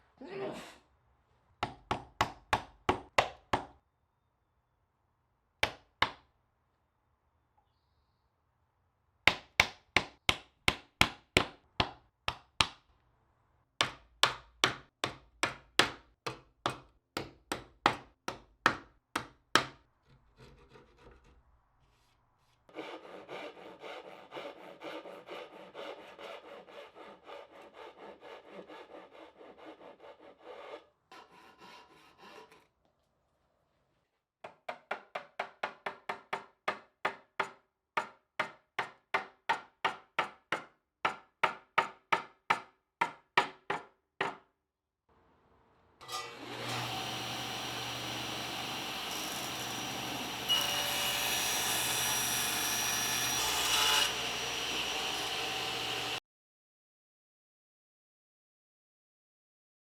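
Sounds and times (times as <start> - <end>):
hand tool strokes on wood: 21.9 - 32.7, 46.2 - 56.2.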